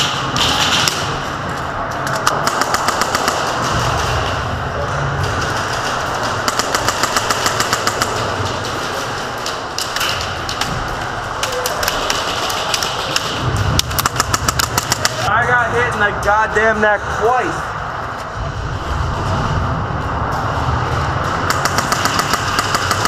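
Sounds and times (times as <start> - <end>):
airsoft rifles firing bursts: 21.5 - 23.0.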